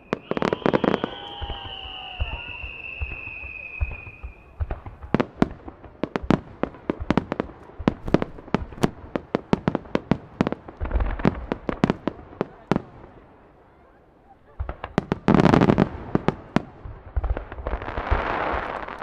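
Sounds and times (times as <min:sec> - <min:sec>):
fireworks crackle: 0:00.0 - 0:13.4, 0:14.5 - 0:19.0
fireworks bangs: 0:00.0 - 0:13.5, 0:14.3 - 0:19.0.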